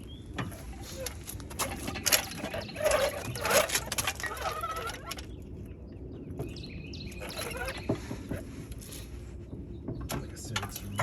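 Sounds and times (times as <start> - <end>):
wrench squeaks: 0.4 - 5.3, 7.2 - 7.9.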